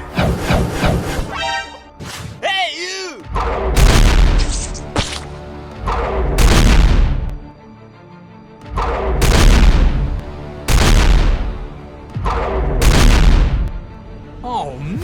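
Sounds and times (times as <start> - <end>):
background music: 0.0 - 15.0
booming impact effects: 3.3 - 5.0, 5.8 - 7.4, 8.7 - 13.9.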